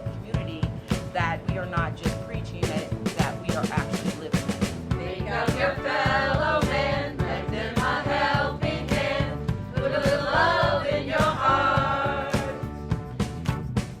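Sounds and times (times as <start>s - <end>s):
steady drum beat: 0.0s - 14.0s
group singing in chorus: 4.9s - 12.9s.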